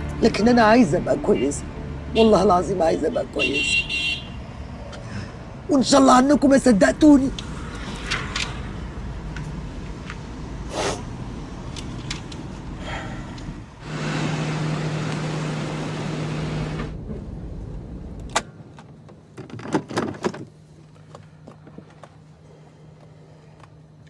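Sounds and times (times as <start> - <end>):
car running rumble: 6.3 - 23.9.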